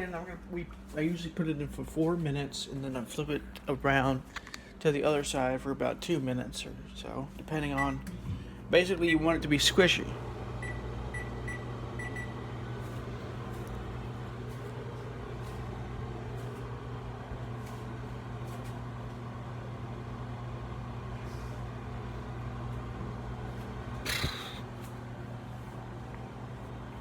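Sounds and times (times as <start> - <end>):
microwave oven humming: 0.0 - 27.0
keypad beeps: 10.6 - 12.3.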